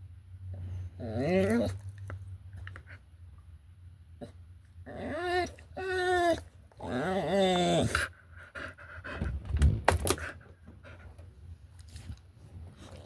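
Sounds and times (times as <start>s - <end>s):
dog whining: 0.9s - 1.8s, 4.8s - 8.1s.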